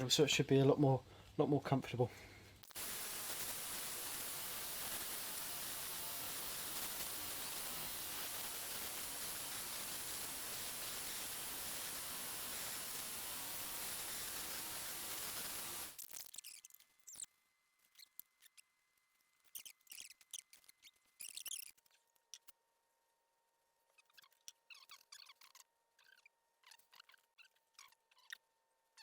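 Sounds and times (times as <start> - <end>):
grinder sanding with a hiss: 2.7 - 16.0.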